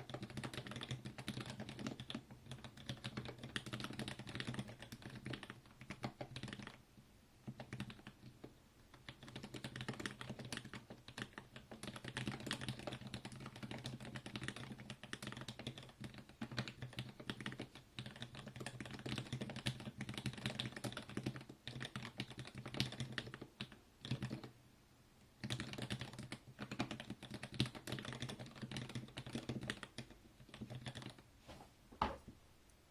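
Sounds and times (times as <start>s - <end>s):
mechanical keyboard typing: 0.0s - 6.8s, 7.4s - 24.5s, 25.4s - 31.2s.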